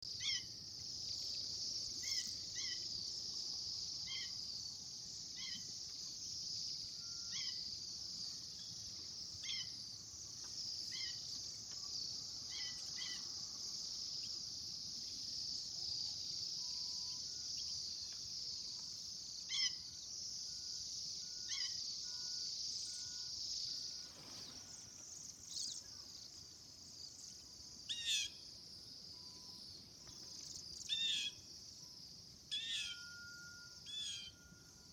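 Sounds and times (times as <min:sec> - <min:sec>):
loud bird calls: 0:00.2 - 0:00.5, 0:32.5 - 0:33.1.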